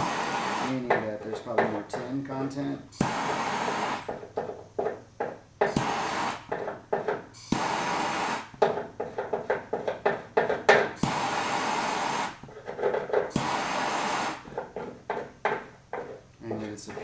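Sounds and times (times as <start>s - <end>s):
gas torch hissing: 0.0s - 4.2s, 5.6s - 6.6s, 7.3s - 8.6s, 10.9s - 12.5s, 13.3s - 14.6s
taps and scrapes on metal: 0.7s - 2.3s, 4.0s - 7.7s, 8.5s - 11.2s, 12.4s - 13.5s, 14.4s - 17.0s.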